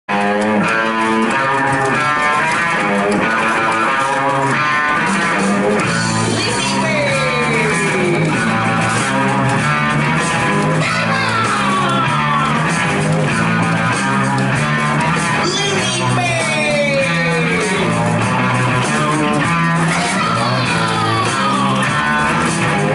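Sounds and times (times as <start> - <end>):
upbeat guitar rock music: 0.1 - 22.9.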